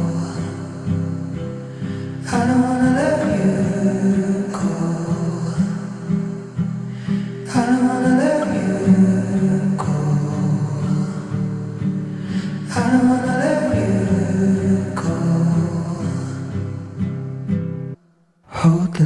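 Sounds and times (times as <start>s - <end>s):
wordless hummed vocal: 0.0s - 17.1s
slow song with sustained chords: 0.0s - 18.0s.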